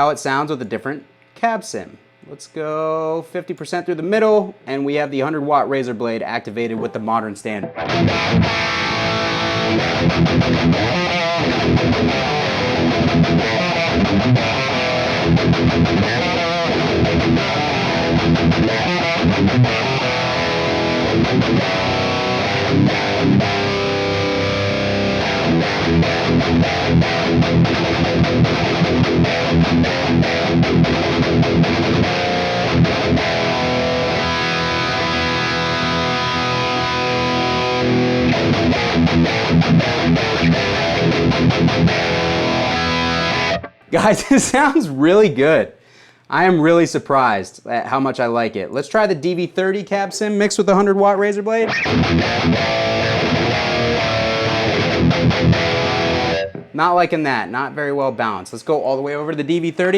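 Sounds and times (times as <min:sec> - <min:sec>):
distorted electric guitar metal riffs: 0:06.6 - 0:45.2, 0:51.6 - 0:57.0.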